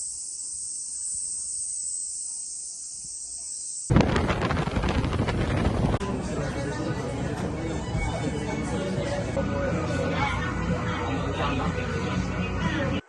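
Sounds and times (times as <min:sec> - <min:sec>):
cicadas droning: 0:00.0 - 0:05.1.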